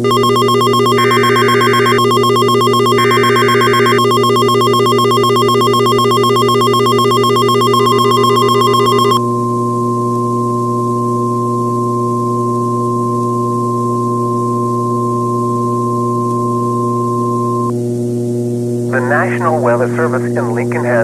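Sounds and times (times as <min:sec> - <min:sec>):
pulsing ringing alert tone: 0:00.0 - 0:09.2
steady warning alarm tone: 0:00.0 - 0:09.3
low steady hum: 0:00.0 - 0:21.0.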